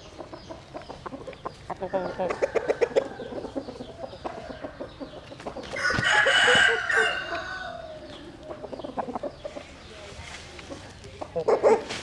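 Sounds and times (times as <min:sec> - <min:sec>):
chicken clucking: 0:00.0 - 0:12.0
rooster crowing: 0:05.8 - 0:08.0.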